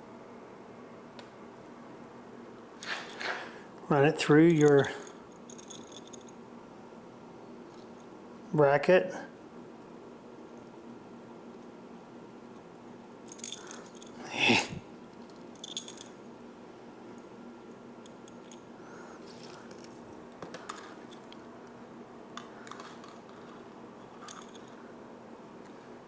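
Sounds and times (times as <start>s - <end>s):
small parts clicking and rattling: 4.4s - 6.4s, 12.5s - 14.2s, 15.2s - 16.2s, 18.0s - 21.5s, 22.4s - 24.8s.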